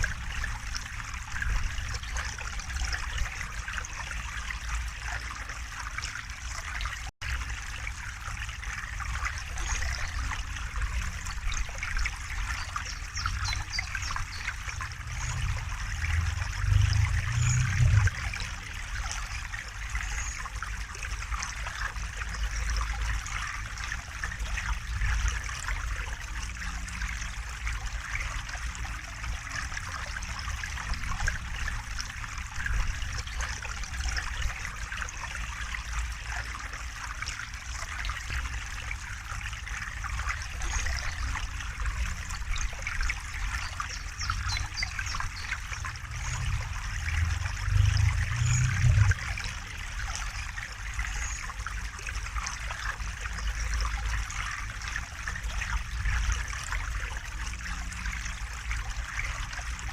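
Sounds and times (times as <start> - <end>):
stream flowing and trickling: 0.0 - 59.9
low rumble: 14.8 - 18.7, 45.6 - 50.0.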